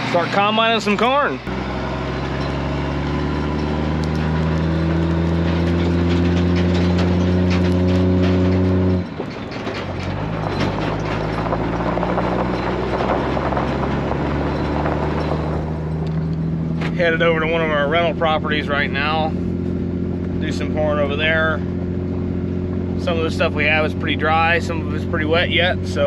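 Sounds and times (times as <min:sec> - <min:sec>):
farm vehicle engine: 0:00.0 - 0:26.0
rattles and knocks: 0:01.6 - 0:25.1.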